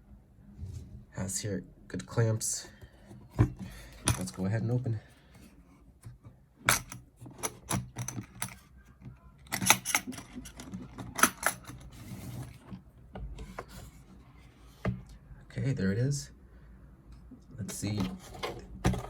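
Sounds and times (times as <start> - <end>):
plastic case clicks and clatter: 17.8 - 19.0.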